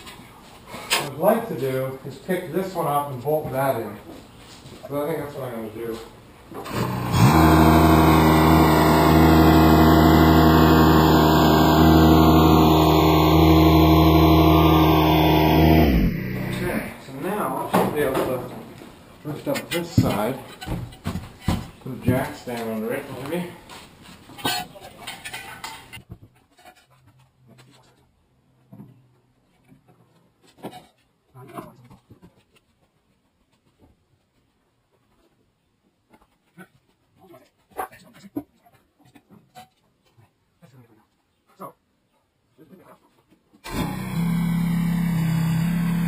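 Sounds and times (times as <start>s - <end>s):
tractor engine running: 6.6s - 17.0s, 43.7s - 46.0s
low steady hum: 6.7s - 18.4s.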